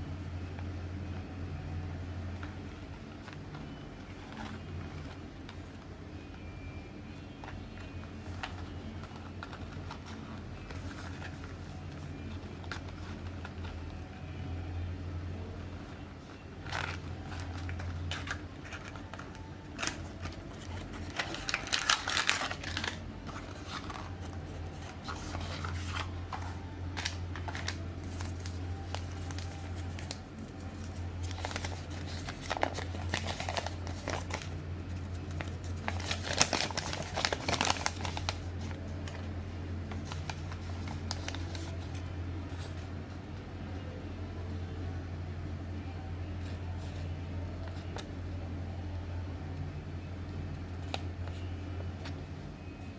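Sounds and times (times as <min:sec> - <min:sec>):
packaging crinkling: 0:16.6 - 0:39.2, 0:39.9 - 0:42.0.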